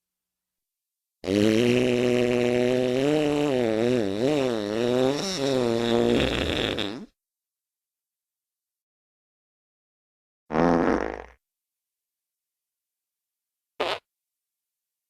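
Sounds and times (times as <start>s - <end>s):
long pitched fart: 1.2s - 7.1s, 10.5s - 11.4s, 13.8s - 14.0s.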